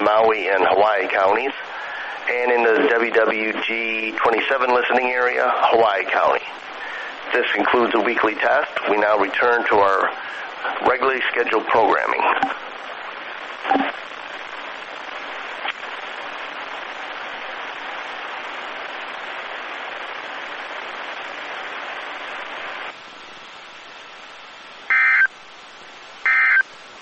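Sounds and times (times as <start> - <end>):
radio receiver hiss: 0.0 - 27.0
digital data bursts: 24.9 - 25.4, 26.2 - 26.6.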